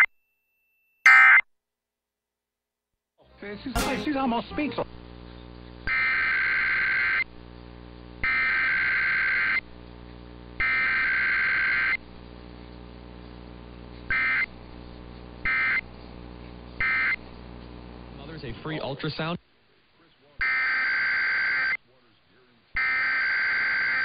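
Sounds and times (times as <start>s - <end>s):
low electrical hum: 3.3s - 20.4s
harsh buzzing data bursts: 3.6s - 19.4s, 20.4s - 21.8s, 22.8s - 24.0s.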